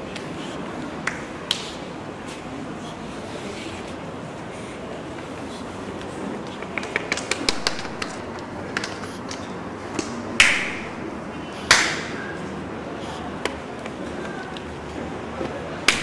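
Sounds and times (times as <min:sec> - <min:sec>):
loud sharp smacks: 0:06.8 - 0:08.2, 0:09.9 - 0:11.0, 0:11.7 - 0:12.2.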